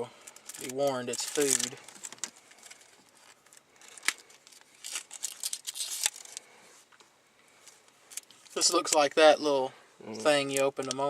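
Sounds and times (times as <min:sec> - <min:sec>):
plastic wrappers crinkling: 0:00.2 - 0:06.5, 0:07.7 - 0:09.2
wrapper tearing: 0:00.3 - 0:06.5.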